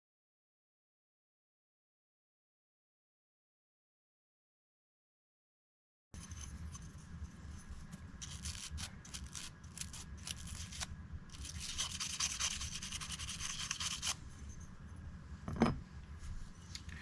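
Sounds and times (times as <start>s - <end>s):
toothbrush scrubbing metal parts: 6.2s - 14.6s.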